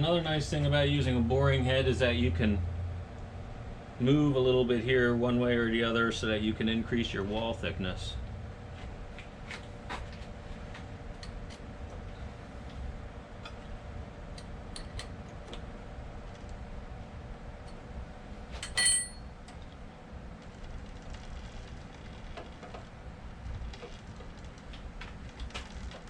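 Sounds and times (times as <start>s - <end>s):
low shop hum: 0.0s - 26.0s
steel tool clinking on metal: 18.6s - 19.2s.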